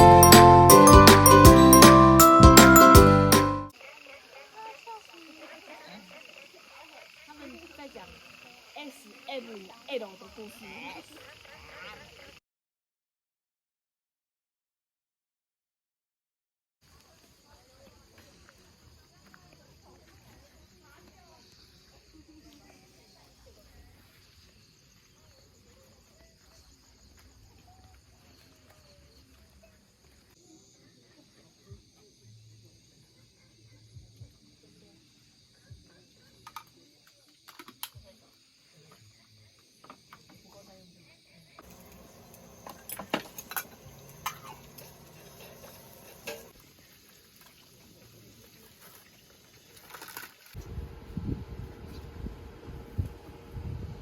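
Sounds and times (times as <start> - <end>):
high-pitched insect chirring: 3.8 - 12.4
low outdoor rumble: 50.6 - 54.0.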